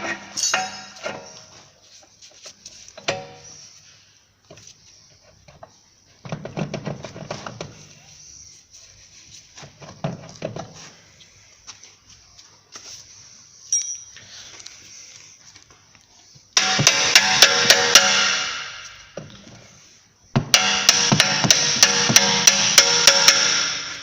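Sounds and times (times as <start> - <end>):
metal tools clinking and knocking: 0.3 - 1.6, 13.7 - 14.3
short ringing metal clink: 0.4 - 1.4, 13.7 - 14.3.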